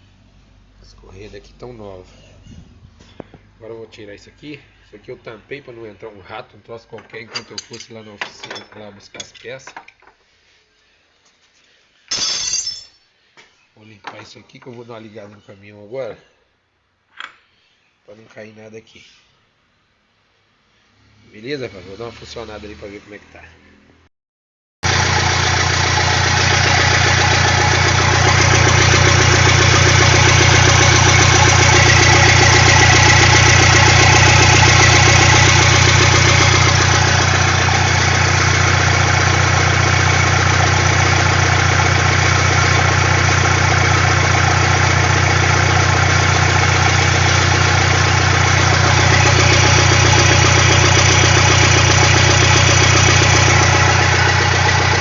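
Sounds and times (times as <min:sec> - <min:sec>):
diesel engine idling: 0:24.8 - 0:55.0.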